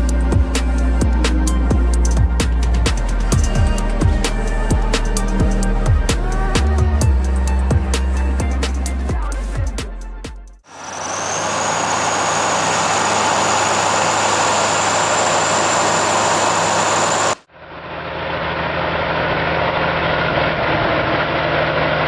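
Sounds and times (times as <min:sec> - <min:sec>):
heavy vehicle engine running: 0:00.0 - 0:09.7, 0:10.6 - 0:22.0
another heavy engine running: 0:10.6 - 0:22.0
high whine: 0:10.7 - 0:17.5.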